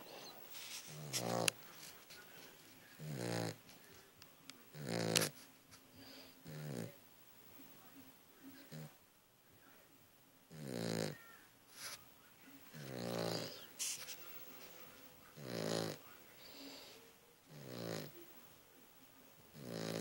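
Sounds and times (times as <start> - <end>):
puppy snoring: 0.0 - 1.6, 3.0 - 3.6, 4.7 - 5.4, 6.4 - 7.0, 8.6 - 9.0, 10.5 - 11.2, 12.7 - 13.7, 15.4 - 18.2, 19.5 - 20.0
puppy snuffs: 0.0 - 1.6.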